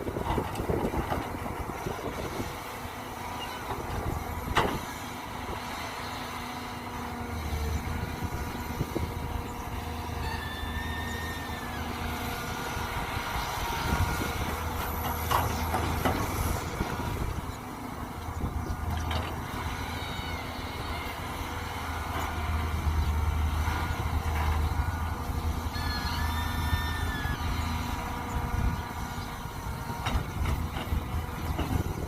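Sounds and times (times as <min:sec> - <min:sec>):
diesel engine running under load: 0:00.0 - 0:32.0
high hydraulic whine: 0:07.5 - 0:17.5.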